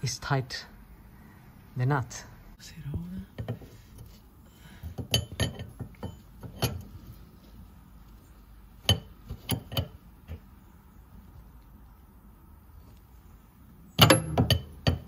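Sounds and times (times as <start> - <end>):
spanner clinking on nut: 4.8 - 7.0, 8.8 - 10.5, 14.0 - 15.0.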